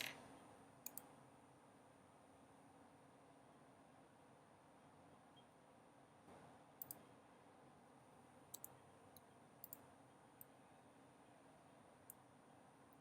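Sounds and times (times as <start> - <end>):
computer mouse clicks: 0.8 - 1.1, 6.8 - 7.0, 8.5 - 9.8.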